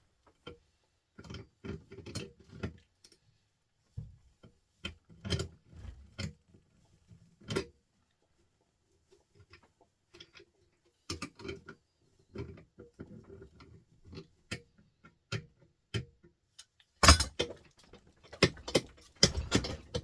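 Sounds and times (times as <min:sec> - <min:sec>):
metal parts clattering: 0:17.0 - 0:17.5.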